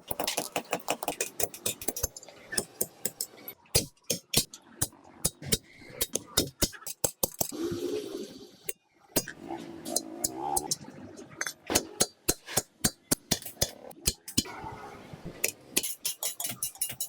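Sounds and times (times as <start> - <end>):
hammer striking metal: 11.4 - 14.5.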